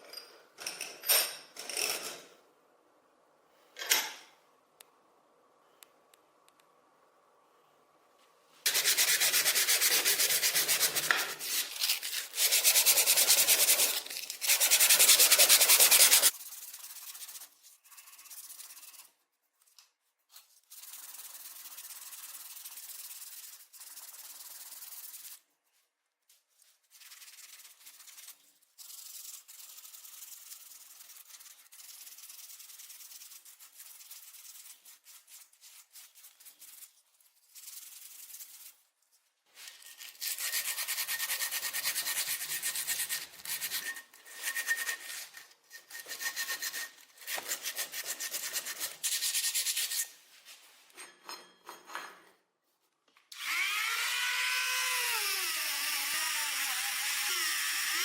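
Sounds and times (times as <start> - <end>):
sanding rusty metal: 8.7 - 17.4, 40.2 - 50.1.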